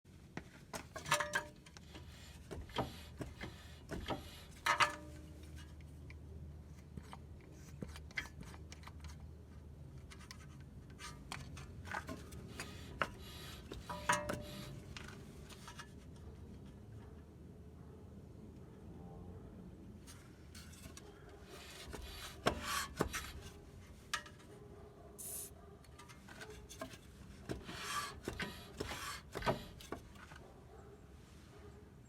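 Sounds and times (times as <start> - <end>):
handling clicks and rattles: 20.0 - 30.8.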